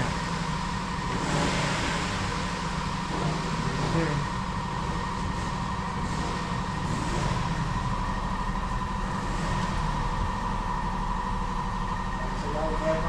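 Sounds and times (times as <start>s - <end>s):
mechanical hum: 0.0s - 13.0s.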